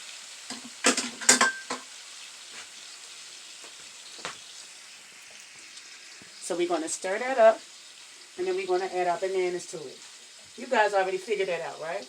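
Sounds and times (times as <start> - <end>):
sauce sizzling in a pan: 0.0 - 12.0
utensil clinking against pan: 0.8 - 1.8.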